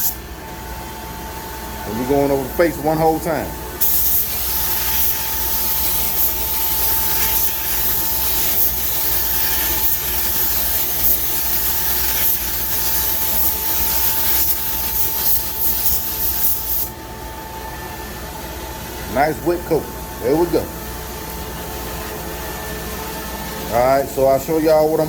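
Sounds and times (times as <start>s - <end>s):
spray gun hissing: 3.8s - 16.9s.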